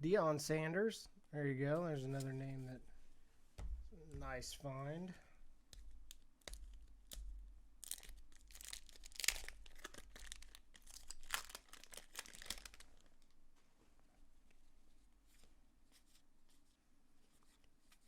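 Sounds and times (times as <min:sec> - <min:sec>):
foil wrapper tearing and crinkling: 0:07.8 - 0:13.3.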